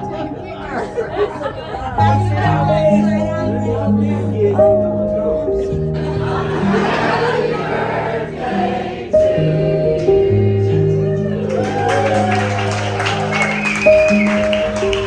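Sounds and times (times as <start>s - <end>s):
choir singing gospel: 5.9s - 15.0s.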